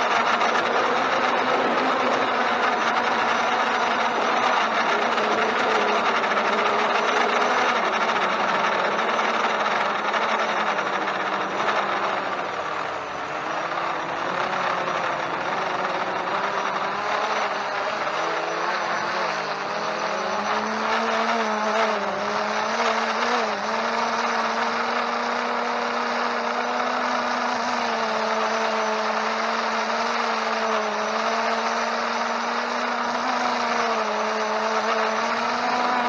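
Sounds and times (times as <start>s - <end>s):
drone motors whining: 0.0s - 36.0s.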